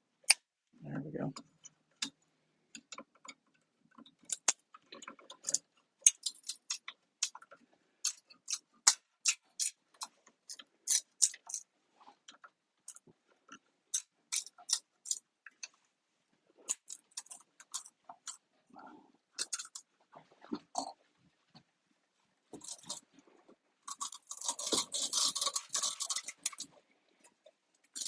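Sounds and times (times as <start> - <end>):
plastic pieces clicking and snapping: 4.0 - 11.7, 13.9 - 15.7, 16.7 - 18.4, 19.4 - 19.9, 22.6 - 23.0, 23.9 - 26.7.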